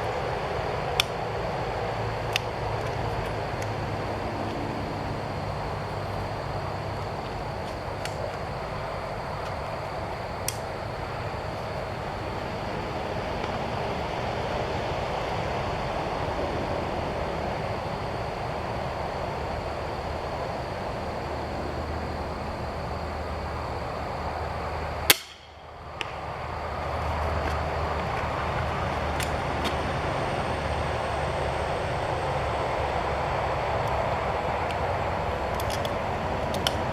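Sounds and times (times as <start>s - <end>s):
outdoor background noise: 0.0s - 36.9s
crossbow firing: 25.1s - 25.6s.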